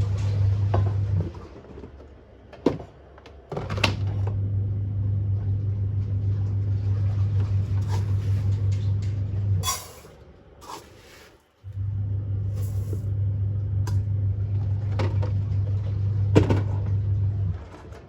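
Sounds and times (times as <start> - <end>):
low electric motor hum: 3.9 - 9.7, 11.6 - 18.0.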